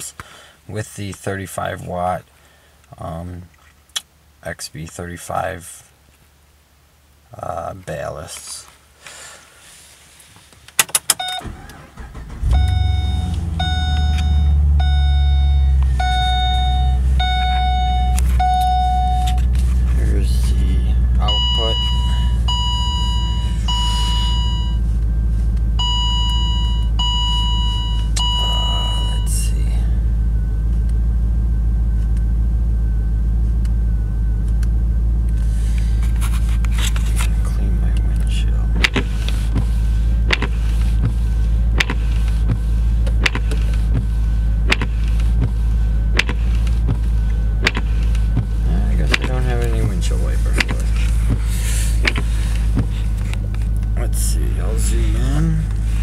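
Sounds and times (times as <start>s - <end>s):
car warning chime beeps: 11.1s - 24.9s, 25.8s - 29.5s
car engine idling: 11.3s - 56.0s.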